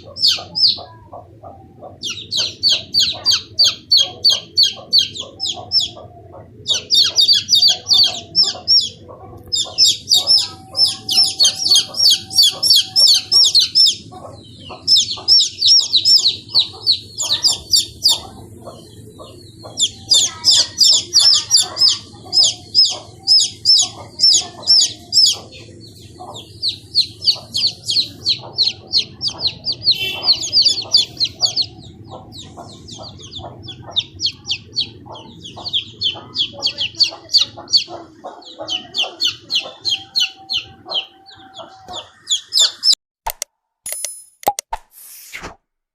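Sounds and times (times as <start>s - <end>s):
low steady hum: 0.0s - 41.7s
chicks peeping: 0.0s - 43.0s
sharp clicks: 43.3s - 44.8s.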